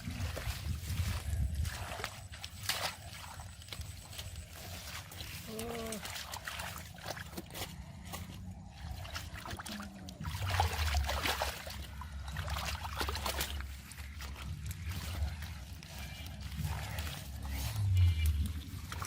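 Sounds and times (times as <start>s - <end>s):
muddy water splashing: 0.0s - 19.0s
low rumble: 7.3s - 19.0s.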